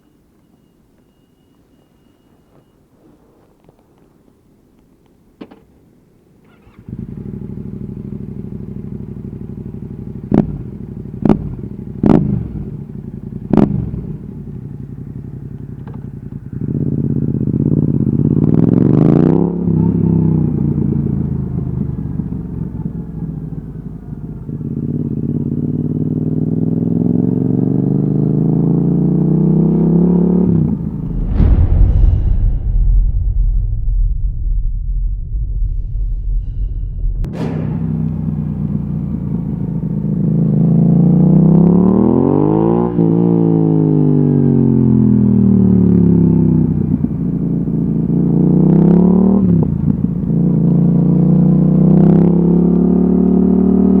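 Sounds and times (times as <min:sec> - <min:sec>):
motorcycle engine revving: 0:06.5 - 0:31.5, 0:37.3 - 0:54.0.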